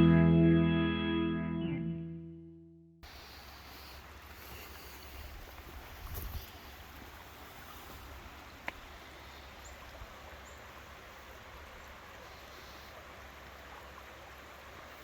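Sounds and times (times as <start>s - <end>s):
outdoor background hiss: 3.0s - 15.0s.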